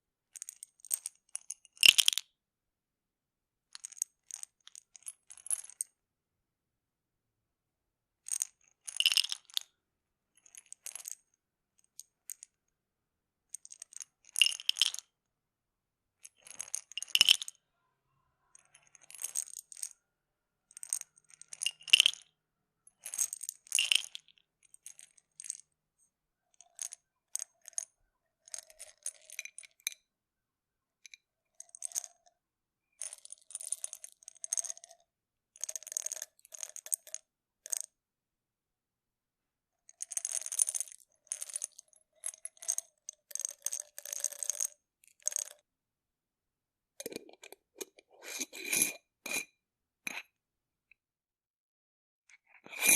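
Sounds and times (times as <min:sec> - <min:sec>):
pills rattling in bottle: 0:13.6 - 0:15.0, 0:18.8 - 0:19.9, 0:20.7 - 0:22.2, 0:23.0 - 0:25.6, 0:26.6 - 0:29.8, 0:31.6 - 0:32.2, 0:33.0 - 0:35.0, 0:40.0 - 0:45.6, 0:47.0 - 0:49.4.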